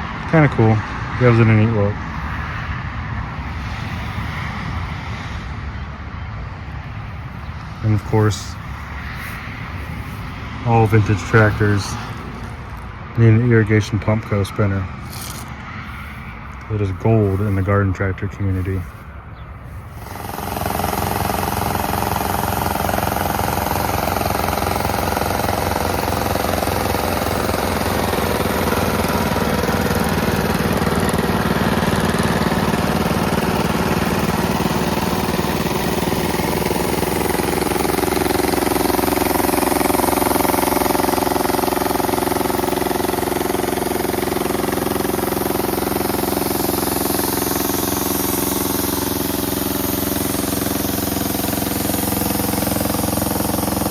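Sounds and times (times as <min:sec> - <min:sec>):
small engine running: 0:00.0 - 0:05.6, 0:06.7 - 0:53.9.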